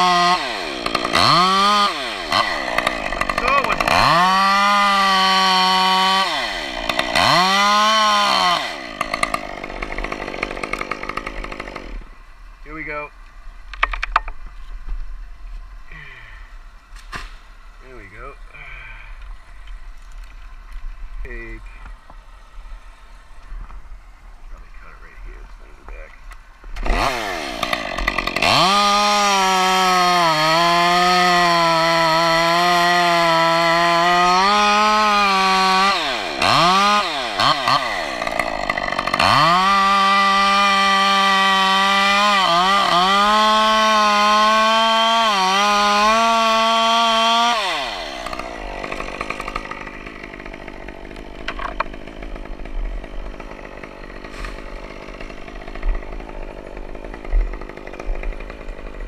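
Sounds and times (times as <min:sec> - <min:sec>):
chainsaw cutting wood: 0:00.0 - 0:12.8, 0:25.3 - 0:59.0.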